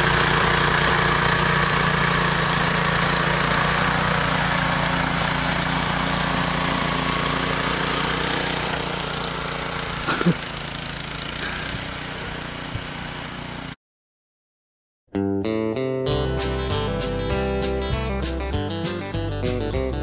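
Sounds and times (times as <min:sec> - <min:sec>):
snowblower engine running: 0:00.0 - 0:13.8.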